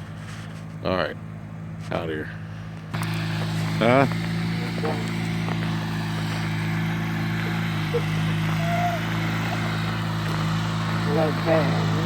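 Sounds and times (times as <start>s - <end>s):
riding lawnmower engine: 0.0s - 12.0s
faint short call: 8.0s - 9.2s.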